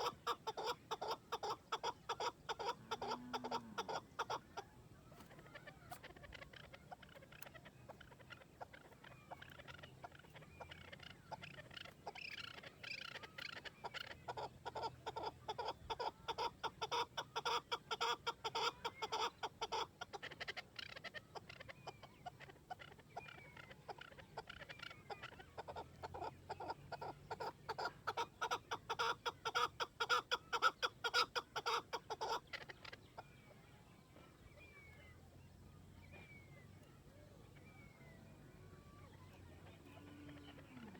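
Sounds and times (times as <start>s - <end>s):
partridge clucking calls: 0.0s - 33.6s, 36.0s - 40.9s.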